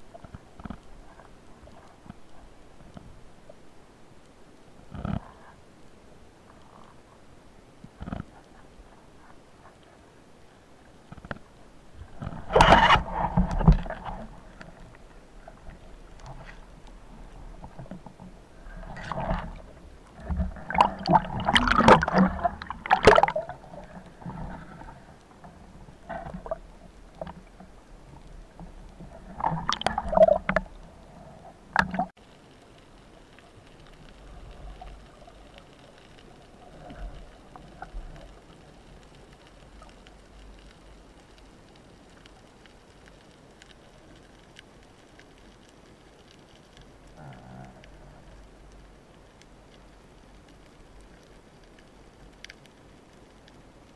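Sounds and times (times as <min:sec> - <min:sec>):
water gurgling and splashing: 0:12.0 - 0:32.2.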